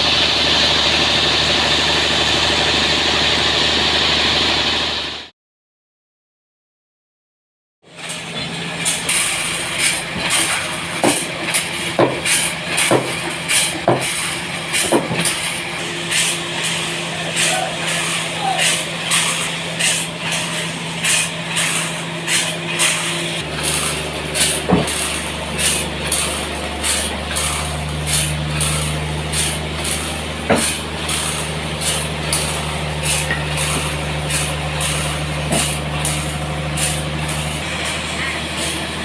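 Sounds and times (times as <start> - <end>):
low motor hum: 8.3 - 39.0.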